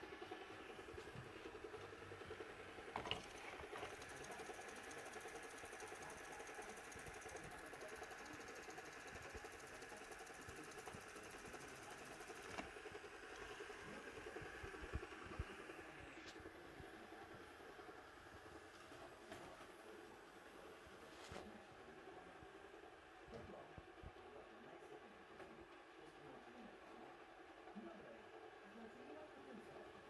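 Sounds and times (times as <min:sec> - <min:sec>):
robot vacuum cleaner running: 0:00.0 - 0:22.8.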